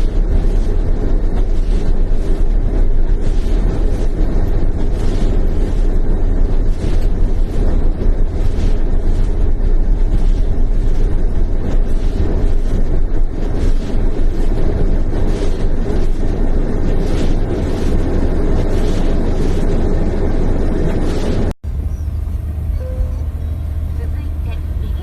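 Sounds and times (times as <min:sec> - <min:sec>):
blizzard wind buffeting microphone: 0:00.0 - 0:25.0.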